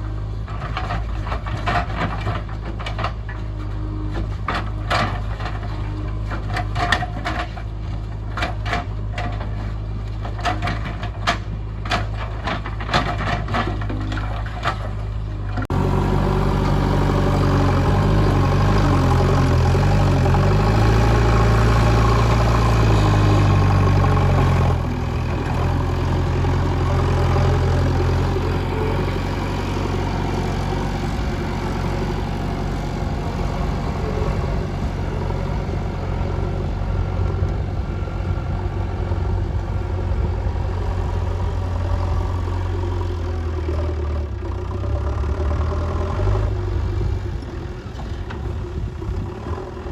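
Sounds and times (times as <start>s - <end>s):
diesel engine running under load: 0.0s - 49.9s.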